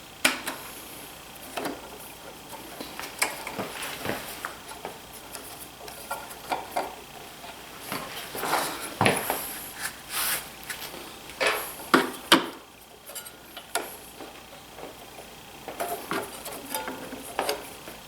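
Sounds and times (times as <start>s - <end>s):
light clicks and knocks on machine: 11.3s - 18.0s.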